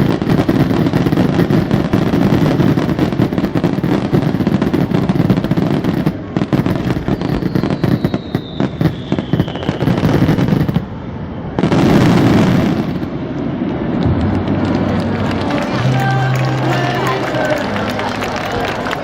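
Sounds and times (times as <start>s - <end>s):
loud firework burst: 0.0s - 15.8s
fireworks crackling and popping: 0.0s - 19.0s
falling firework whistle: 6.4s - 10.9s.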